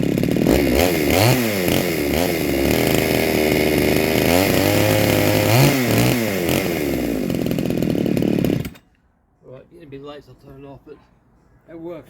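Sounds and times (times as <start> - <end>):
chainsaw engine revving: 0.0 - 8.8.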